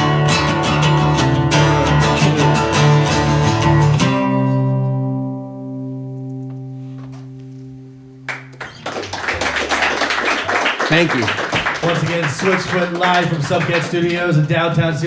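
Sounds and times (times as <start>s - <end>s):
acoustic guitar strumming: 0.0s - 8.8s.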